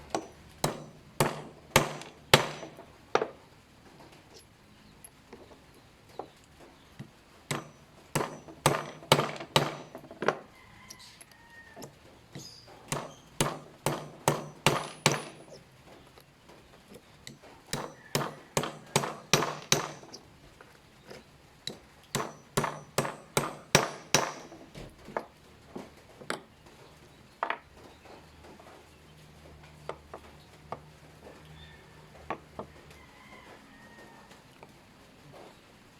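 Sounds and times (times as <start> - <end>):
sharp tapping on metal mold: 0.0 - 3.4, 7.0 - 11.0, 11.8 - 15.6, 16.9 - 20.2, 21.6 - 25.3.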